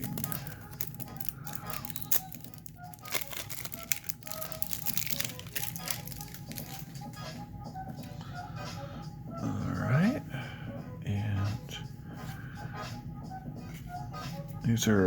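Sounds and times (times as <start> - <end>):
cards being flipped through: 0.0 - 7.2
faint background music: 0.0 - 15.0.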